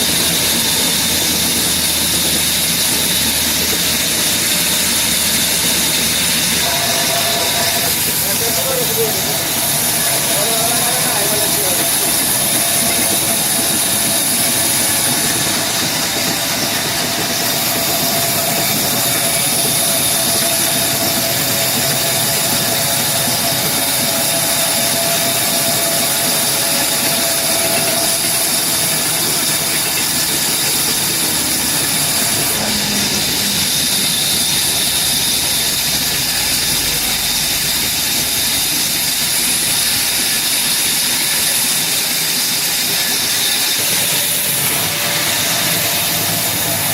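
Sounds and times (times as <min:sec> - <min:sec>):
wood-cutting machine whining: 0:00.0 - 0:46.9.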